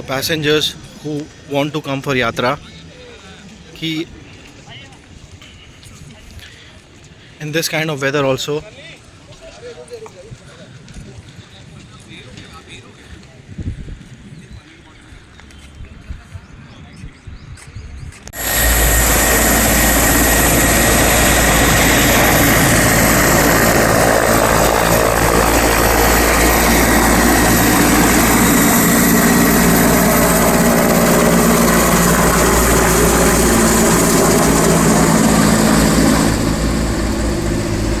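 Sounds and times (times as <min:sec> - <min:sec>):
helicopter rotor and turbine: 0:18.4 - 0:38.0.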